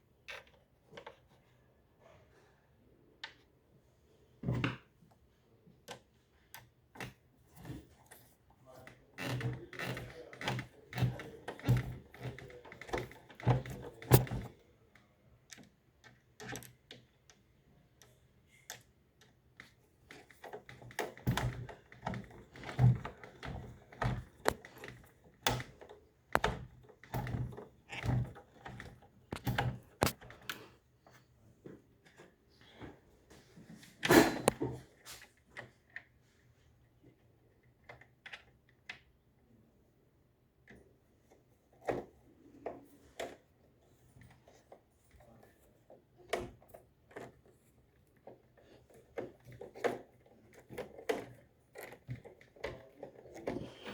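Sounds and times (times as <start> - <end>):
hands tapping and clicking on casing: 26.4 - 30.6.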